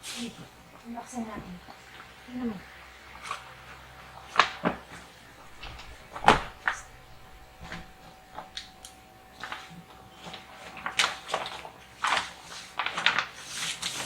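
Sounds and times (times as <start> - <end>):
packaging crinkling and rustling: 3.2 - 14.0.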